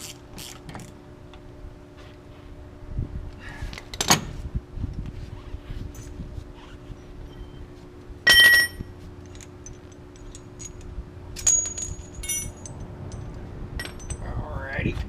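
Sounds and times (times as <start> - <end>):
steady hum: 0.0 - 15.0
steel parts clanking: 8.3 - 14.4.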